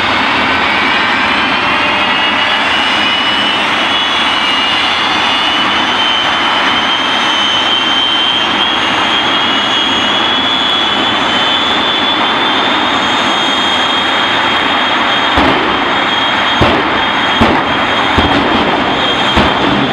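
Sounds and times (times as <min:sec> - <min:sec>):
jet engine roaring with high whine: 0:00.0 - 0:19.9.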